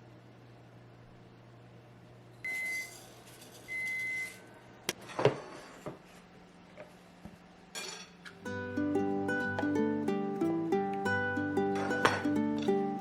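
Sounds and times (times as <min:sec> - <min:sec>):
kitchen knocks and clatters: 0:05.0 - 0:06.1, 0:11.8 - 0:12.4.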